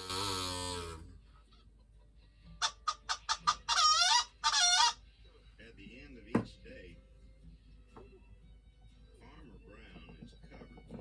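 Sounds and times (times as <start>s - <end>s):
hen clucking: 2.5s - 5.0s
honking calls: 2.6s - 5.0s.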